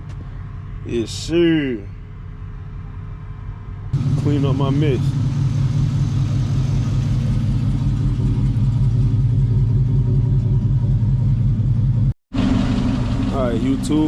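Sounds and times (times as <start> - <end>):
truck engine idling: 4.0 - 14.0.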